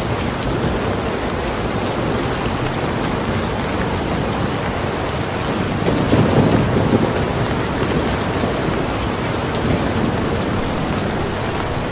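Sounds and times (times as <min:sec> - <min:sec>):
steady rain: 0:00.0 - 0:11.9
thunder rumble: 0:05.6 - 0:11.9.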